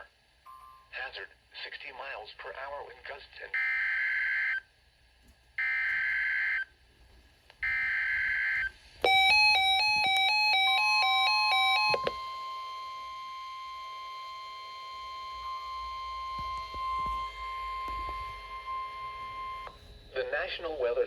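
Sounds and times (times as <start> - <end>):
electronic beeps: 14.9 - 20.8.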